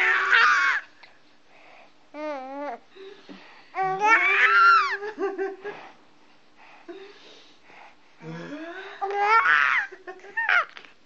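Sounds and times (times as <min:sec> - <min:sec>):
young child squealing: 0:00.0 - 0:00.8, 0:04.1 - 0:05.0.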